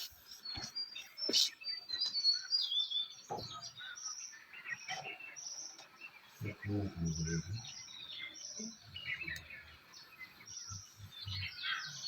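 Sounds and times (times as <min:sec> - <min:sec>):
songbirds chirping and singing: 0:00.0 - 0:12.0
lower bird call: 0:06.2 - 0:12.0.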